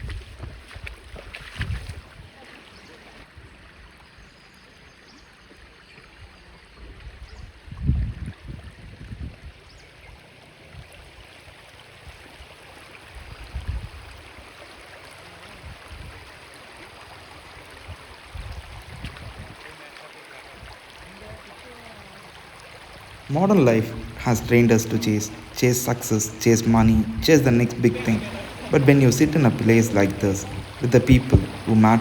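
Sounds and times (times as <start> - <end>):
river water flowing: 19.6 - 32.0.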